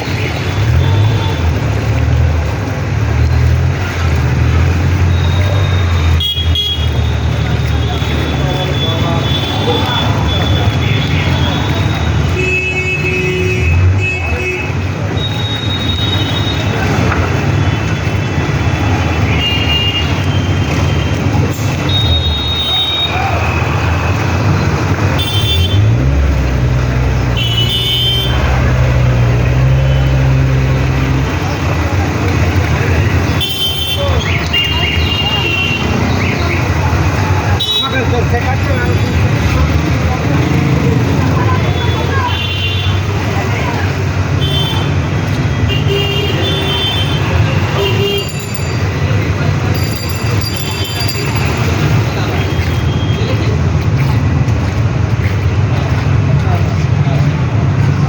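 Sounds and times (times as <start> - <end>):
traffic engines rumbling: 0.0 - 58.0
vehicle engine revving: 23.2 - 45.7.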